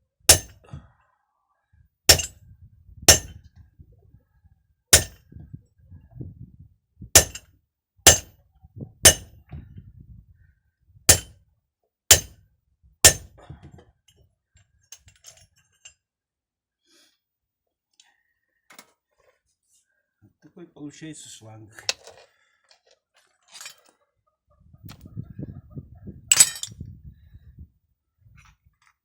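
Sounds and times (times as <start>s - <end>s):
hammer striking metal fitting: 0.3s - 0.5s, 2.1s - 2.3s, 3.1s - 3.4s, 5.0s - 5.2s, 7.2s - 7.4s, 8.1s - 8.3s, 9.1s - 9.3s, 11.1s - 11.3s, 12.1s - 12.3s, 13.1s - 13.3s.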